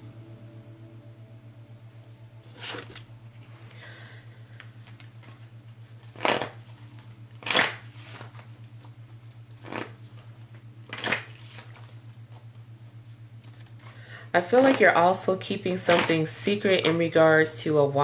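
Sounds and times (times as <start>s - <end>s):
low electrical hum: 0.0s - 18.0s
cards being shuffled: 2.4s - 3.1s, 4.6s - 12.6s, 13.4s - 14.8s.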